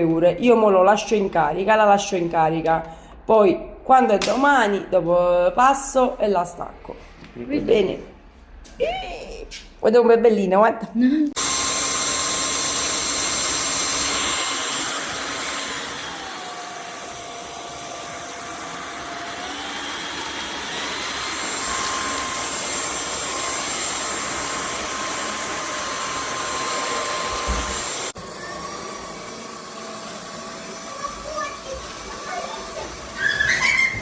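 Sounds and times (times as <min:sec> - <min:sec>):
stick vacuum cleaner motor whine: 0:11.4 - 0:34.0.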